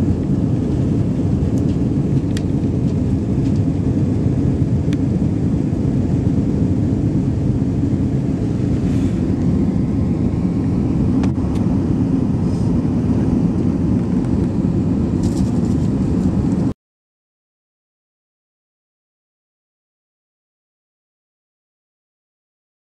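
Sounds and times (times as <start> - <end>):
airliner cabin engine rumble: 0.0 - 16.8.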